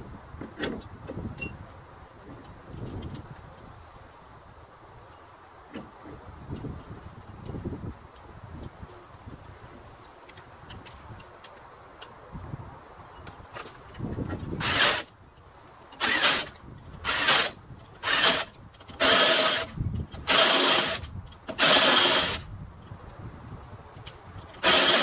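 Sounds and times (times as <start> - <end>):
power tool running lug nuts: 14.6 - 15.1, 15.9 - 22.5, 24.4 - 25.0.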